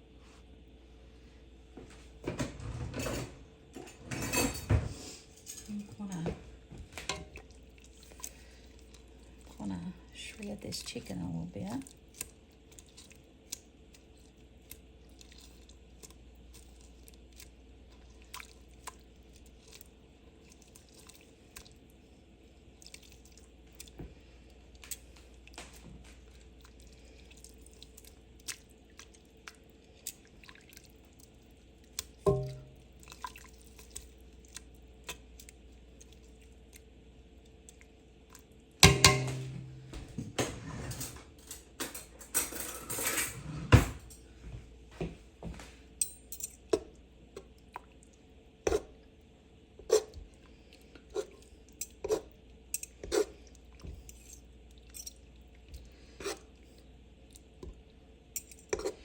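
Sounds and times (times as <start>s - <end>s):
dishes clattering: 2.3s - 5.7s, 7.0s - 7.4s, 32.3s - 32.8s, 38.8s - 44.2s
wet squishing of chicken: 7.3s - 38.8s, 46.8s - 59.0s
ringing metal clang: 32.3s - 32.7s, 38.8s - 39.8s.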